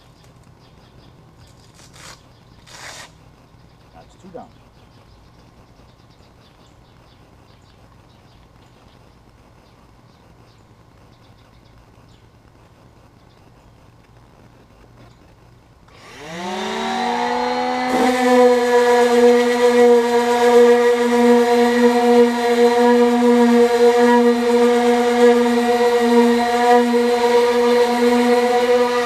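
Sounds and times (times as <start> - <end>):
power tool motor whining: 15.9 - 29.0.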